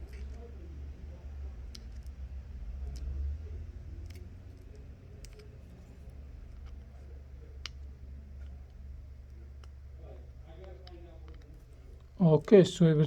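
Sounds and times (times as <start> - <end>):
small parts clicking and tapping: 4.0 - 12.2.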